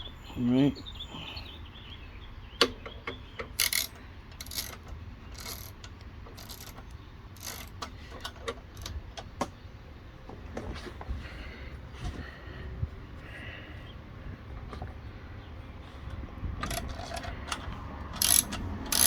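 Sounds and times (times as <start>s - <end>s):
socket ratchet clicking: 3.4s - 9.0s, 16.6s - 19.0s
sharp metal clicks: 3.4s - 9.4s, 16.6s - 19.0s.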